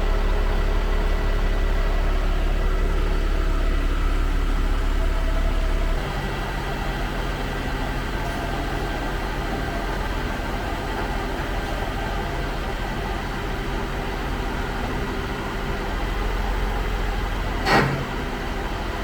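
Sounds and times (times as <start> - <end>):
diesel engine humming: 0.0 - 19.0.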